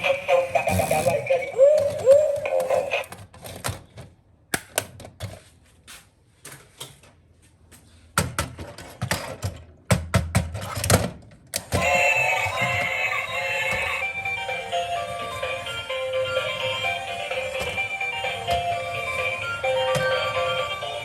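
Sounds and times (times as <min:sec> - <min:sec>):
music: 0:11.8 - 0:21.0.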